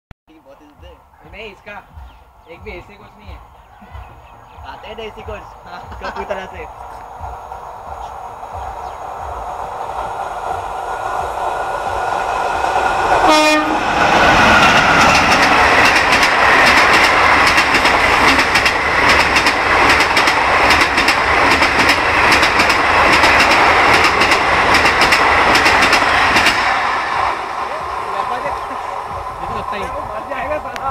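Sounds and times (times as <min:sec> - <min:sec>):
train wheels clattering: 0:05.3 - 0:28.8
train horn blast: 0:13.2 - 0:13.8.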